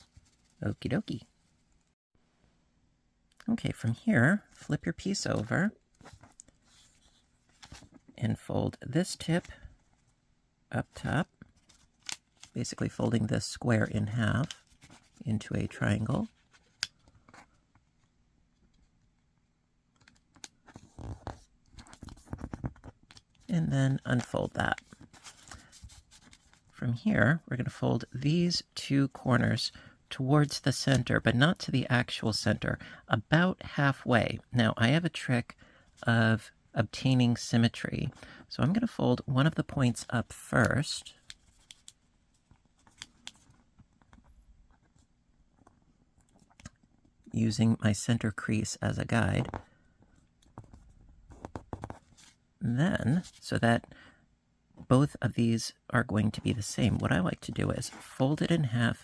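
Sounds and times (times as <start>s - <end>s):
paper being folded: 11.0s - 17.5s, 20.0s - 26.8s, 39.4s - 47.0s.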